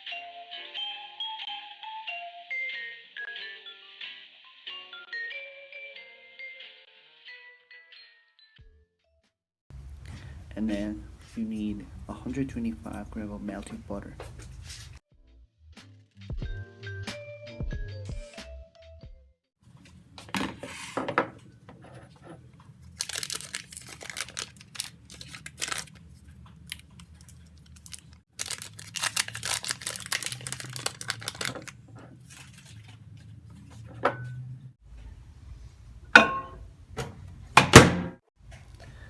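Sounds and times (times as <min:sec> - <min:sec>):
wrapping crinkling and tearing: 0:22.8 - 0:33.0.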